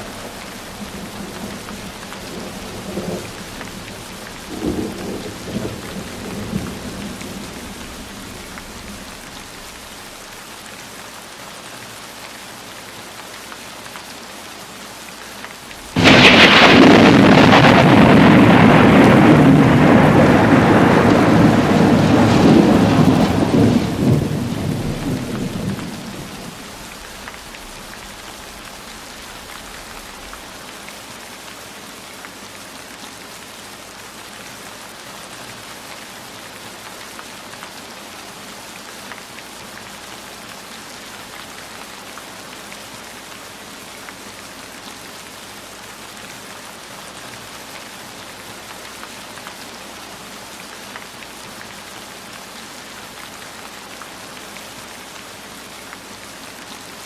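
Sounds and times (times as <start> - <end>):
thunder rolling: 0.0 - 9.6, 15.9 - 30.2
steady rain falling: 0.0 - 57.0.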